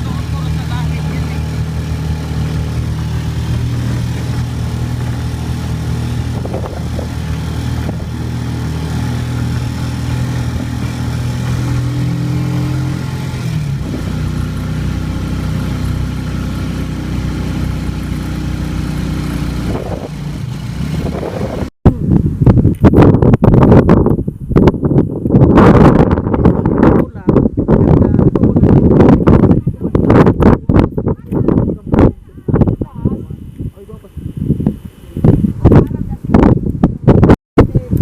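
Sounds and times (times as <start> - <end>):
vehicle engine running: 0.0 - 22.4.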